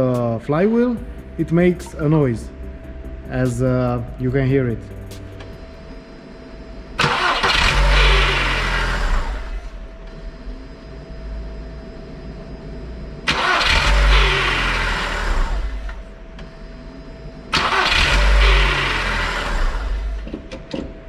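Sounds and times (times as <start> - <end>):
car engine starting: 0.0 - 10.6, 13.2 - 16.2, 17.5 - 20.7.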